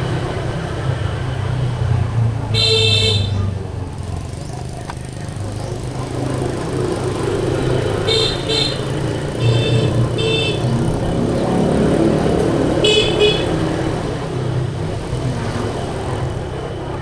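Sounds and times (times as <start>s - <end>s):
road traffic rumble: 0.0s - 17.0s
vehicle horns tooting: 2.5s - 3.5s, 7.9s - 10.8s, 12.8s - 13.6s.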